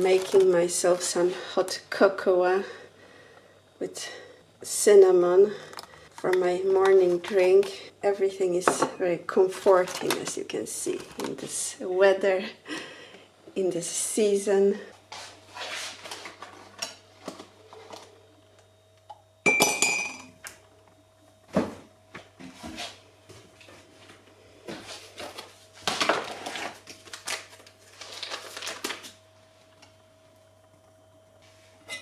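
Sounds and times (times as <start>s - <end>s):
sharp ringing clink: 19.5s - 20.3s.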